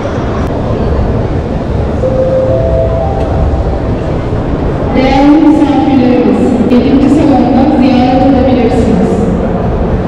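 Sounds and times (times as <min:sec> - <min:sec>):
exhibition hall background noise: 0:00.0 - 0:10.0
two-tone rising chime: 0:02.0 - 0:04.5.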